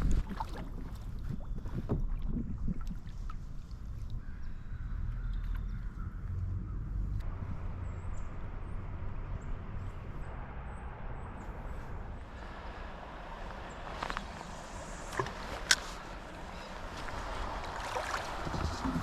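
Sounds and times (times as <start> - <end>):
faint bird chirps: 4.2 - 7.0
low rumble: 4.5 - 19.0.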